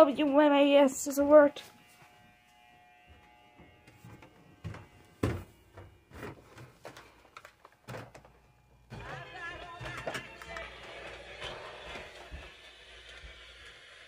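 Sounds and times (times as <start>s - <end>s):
radio playing music: 7.9s - 14.0s.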